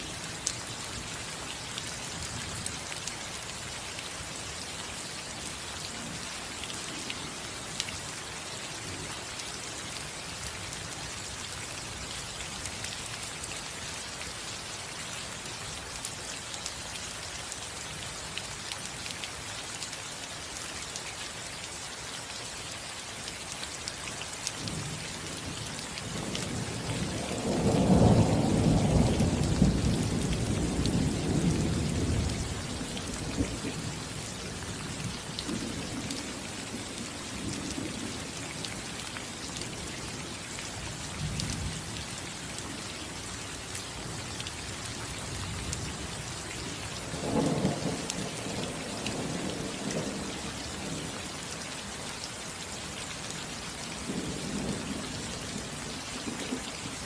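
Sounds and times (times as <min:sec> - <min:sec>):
rain falling on a roof: 0:00.0 - 0:57.0
thunder rumbling: 0:26.2 - 0:33.7.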